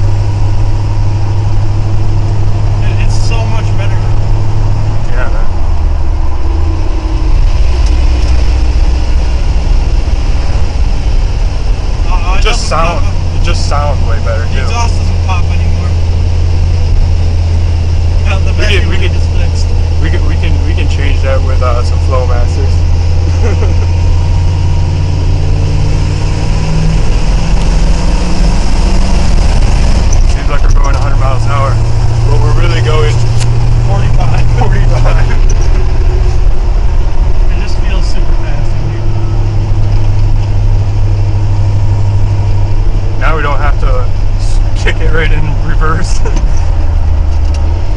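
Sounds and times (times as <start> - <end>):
pickup engine low rumble: 0.0 - 47.9.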